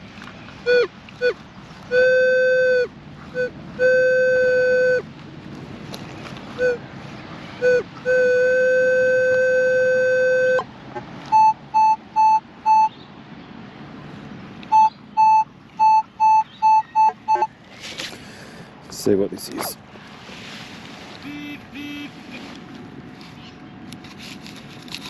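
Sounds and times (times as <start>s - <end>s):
low electronic detector tone: 0.7s - 5.1s, 7.6s - 10.7s, 11.3s - 13.0s, 14.7s - 17.5s, 21.2s - 22.4s
higher pitched short beeps: 7.6s - 10.6s, 11.4s - 13.0s, 14.7s - 17.5s, 21.2s - 22.4s
short detector blips: 7.6s - 10.6s, 14.7s - 17.5s.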